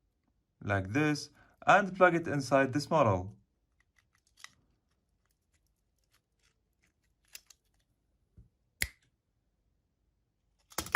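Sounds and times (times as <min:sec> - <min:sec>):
small parts clicking and tapping: 0:03.7 - 0:07.9, 0:10.6 - 0:10.9.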